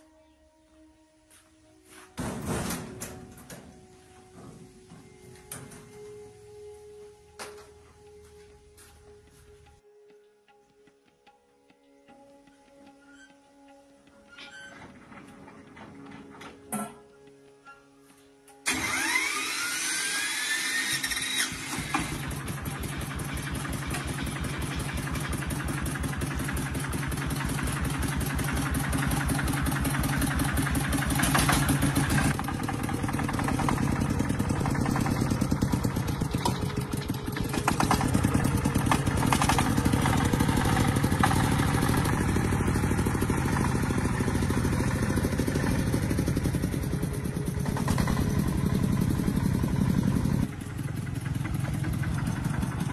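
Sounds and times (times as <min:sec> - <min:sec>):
tractor diesel engine chugging: 0:02.2 - 0:06.8, 0:18.6 - 0:52.9.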